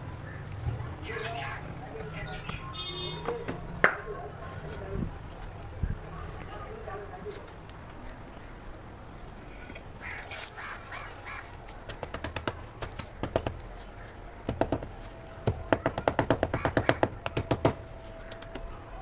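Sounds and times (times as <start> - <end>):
blocks tapped and crumbling: 10.2 - 18.7.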